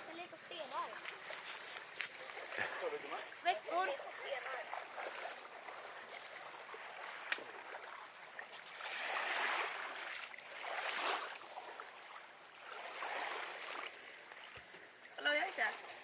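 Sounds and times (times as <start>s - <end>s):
small waves washing on shore: 0.0s - 16.0s.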